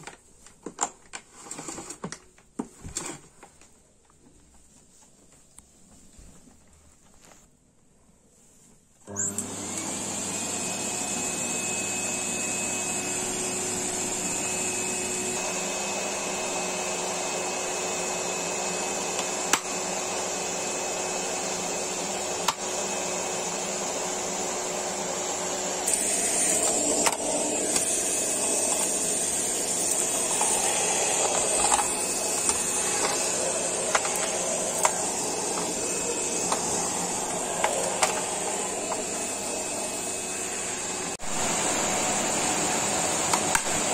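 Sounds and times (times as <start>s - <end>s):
vacuum cleaner running: 9.0s - 43.9s.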